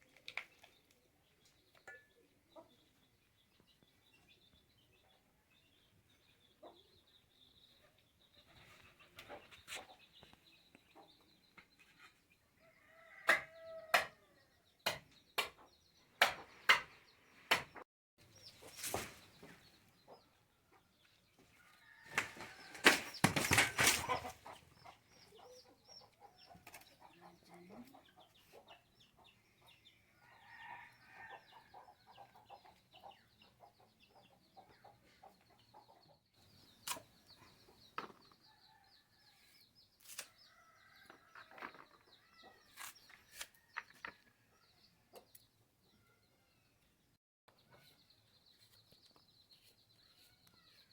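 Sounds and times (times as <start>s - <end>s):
chickens clucking: 7.8s - 11.3s, 22.1s - 29.8s
wings flapping: 22.1s - 24.3s.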